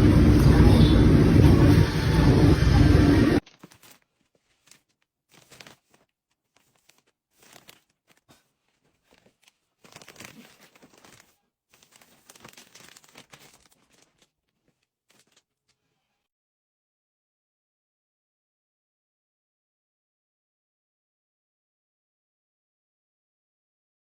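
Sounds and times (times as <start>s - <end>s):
rustling and crinkling: 3.4s - 16.3s.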